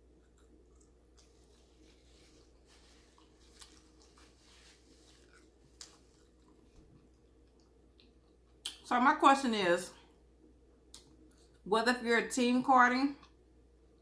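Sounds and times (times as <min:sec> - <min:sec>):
chewing and wet mouth sounds: 0:00.0 - 0:08.9, 0:10.7 - 0:11.7, 0:13.2 - 0:14.0
low steady hum: 0:00.0 - 0:14.0.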